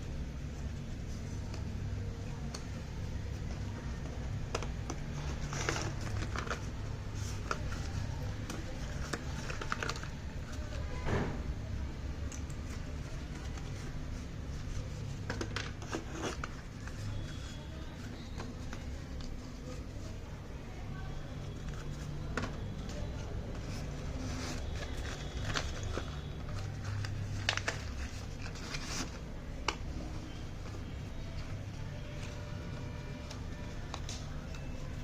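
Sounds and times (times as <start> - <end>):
packaging clicks and taps: 4.4 - 10.8
packaging rustling: 4.5 - 11.0, 21.0 - 35.0.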